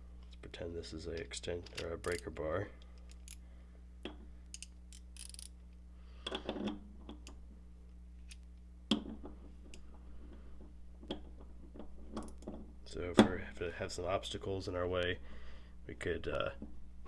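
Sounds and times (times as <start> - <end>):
hand ratchet metal clicks: 1.7 - 2.3, 4.5 - 5.6.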